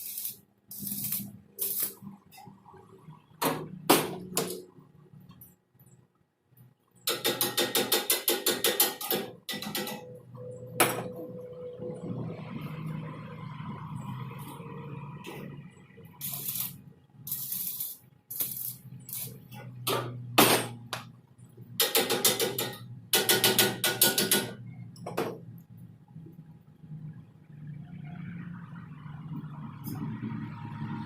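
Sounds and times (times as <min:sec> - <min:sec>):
arc welding crackling hiss: 0:00.0 - 0:02.2, 0:16.2 - 0:19.5.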